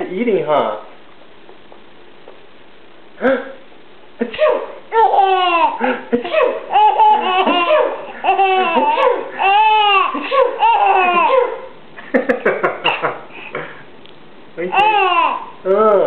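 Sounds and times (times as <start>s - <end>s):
baby laughing: 4.6s - 11.8s, 14.7s - 15.6s.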